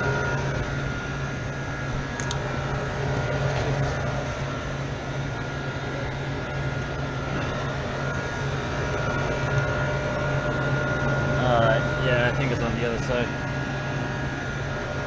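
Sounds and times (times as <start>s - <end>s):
faint high whine: 0.0s - 15.0s
refrigeration unit humming: 0.0s - 15.0s.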